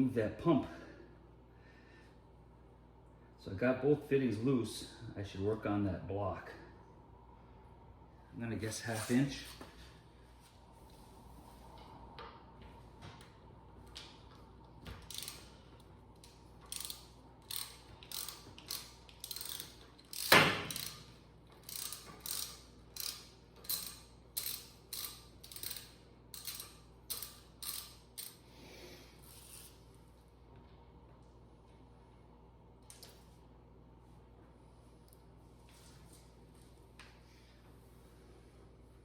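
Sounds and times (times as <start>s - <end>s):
ratchet wrench clicking: 15.0s - 15.6s, 16.2s - 28.4s.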